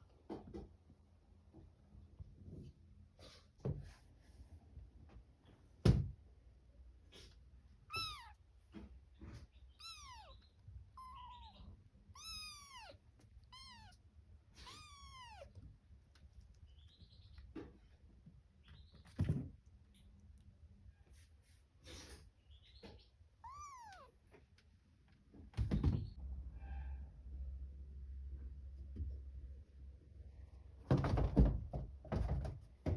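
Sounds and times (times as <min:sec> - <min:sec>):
kitten mewing: 0:07.9 - 0:08.4, 0:09.8 - 0:15.6, 0:23.4 - 0:24.2.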